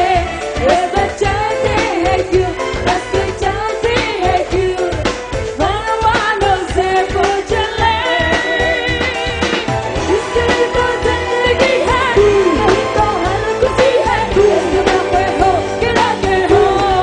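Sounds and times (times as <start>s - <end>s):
bass: 0.0s - 17.0s.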